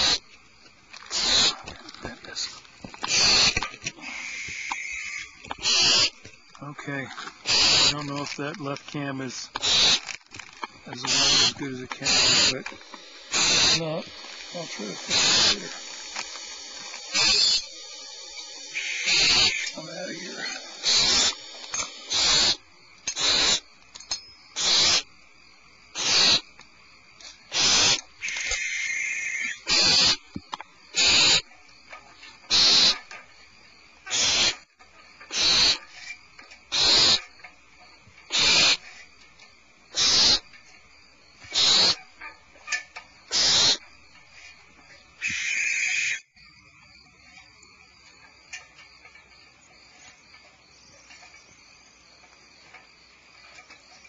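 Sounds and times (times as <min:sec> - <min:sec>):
owl nestlings hissing begging calls: 0:00.0 - 0:00.3, 0:01.0 - 0:01.7, 0:03.0 - 0:06.2, 0:07.4 - 0:10.2, 0:10.9 - 0:23.8, 0:24.5 - 0:25.1, 0:25.9 - 0:26.5, 0:27.3 - 0:30.3, 0:30.9 - 0:31.5, 0:32.4 - 0:33.2, 0:34.0 - 0:36.1, 0:36.7 - 0:37.4, 0:38.3 - 0:39.1, 0:39.9 - 0:40.5, 0:41.4 - 0:44.6, 0:45.2 - 0:46.3.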